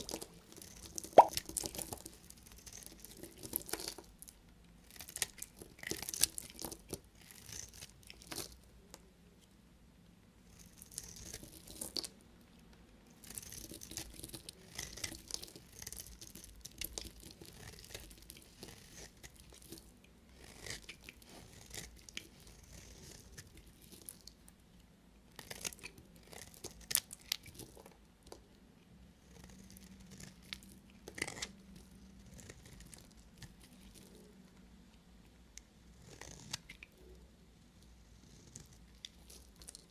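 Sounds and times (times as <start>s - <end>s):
knife cutting soap: 13.2s - 24.1s, 29.5s - 34.2s.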